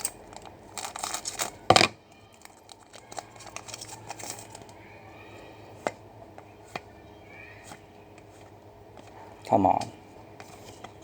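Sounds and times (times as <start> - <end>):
card pack wrapper crinkling: 0.0 - 1.7.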